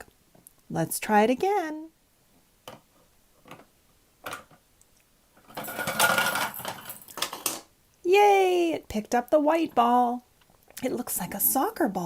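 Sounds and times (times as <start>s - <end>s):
toy truck rattling down ramp: 5.5s - 7.6s.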